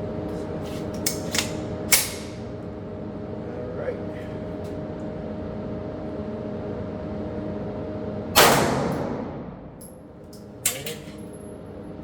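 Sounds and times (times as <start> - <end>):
pistol gunshot: 8.4 - 9.7.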